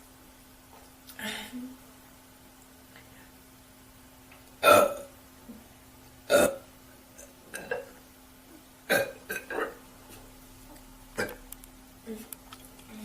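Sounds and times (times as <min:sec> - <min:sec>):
woman burping: 0:04.6 - 0:05.1, 0:06.3 - 0:06.7, 0:07.5 - 0:08.0, 0:08.9 - 0:09.8, 0:11.2 - 0:11.4.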